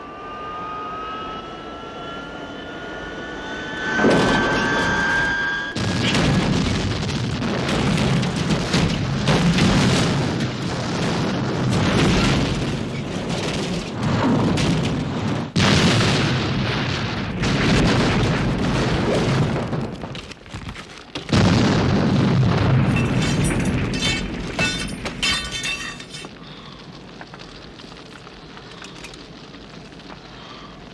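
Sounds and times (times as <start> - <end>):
fire crackling: 2.4 - 30.9
explosion booms: 3.8 - 20.3, 21.2 - 26.9.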